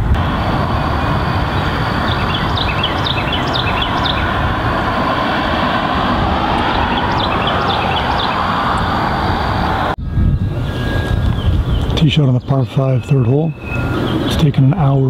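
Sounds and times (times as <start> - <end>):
wind buffeting microphone: 0.0 - 15.0
bird chirping: 0.9 - 4.6, 6.4 - 9.0, 10.6 - 15.0.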